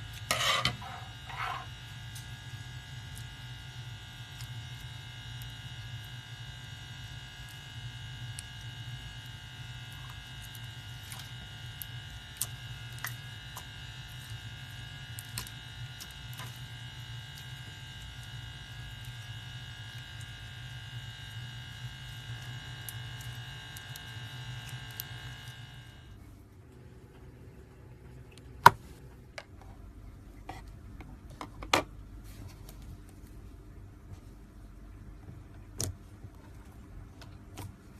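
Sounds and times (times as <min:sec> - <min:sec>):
small electric motor humming: 0:00.0 - 0:26.2.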